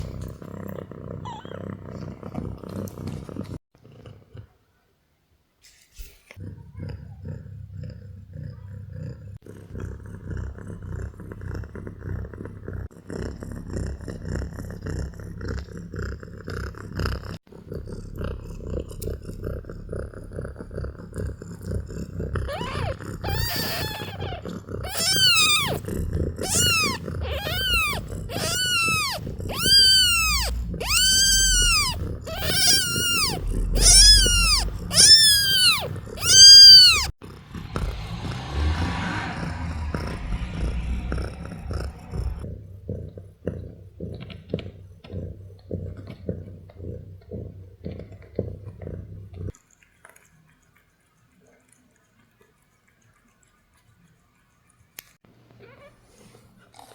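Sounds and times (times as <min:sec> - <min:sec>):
cat purring: 0:00.0 - 0:04.6, 0:06.1 - 0:49.6
kitten mewing: 0:22.5 - 0:42.4.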